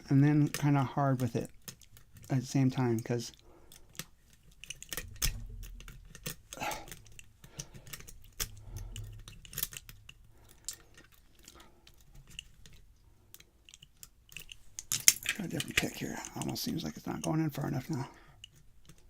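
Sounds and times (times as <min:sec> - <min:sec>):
lock pick clicking in padlock: 0:03.8 - 0:16.5.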